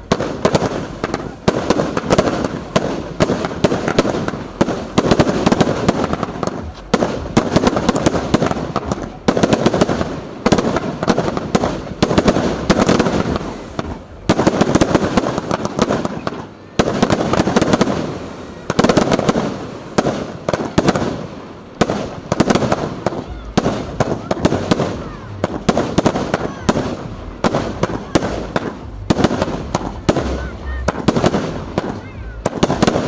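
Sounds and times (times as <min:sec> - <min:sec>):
fireworks bangs and crackles: 0:00.0 - 0:33.0.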